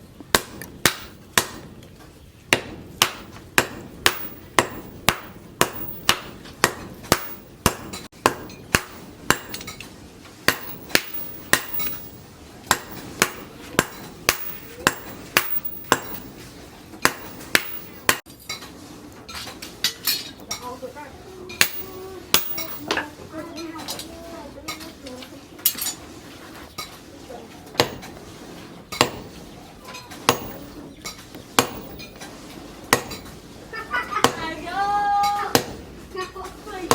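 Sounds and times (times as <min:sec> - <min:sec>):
hammer striking steel on anvil: 0:00.3 - 0:01.7, 0:02.5 - 0:09.9, 0:10.5 - 0:18.2, 0:21.6 - 0:23.0, 0:27.8 - 0:28.2, 0:29.0 - 0:29.4, 0:30.1 - 0:32.3, 0:32.9 - 0:33.3.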